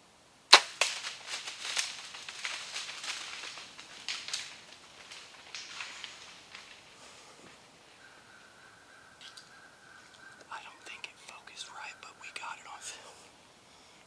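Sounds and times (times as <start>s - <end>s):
bow shot crack: 0.5s - 7.1s
deer running through brush: 0.5s - 11.1s.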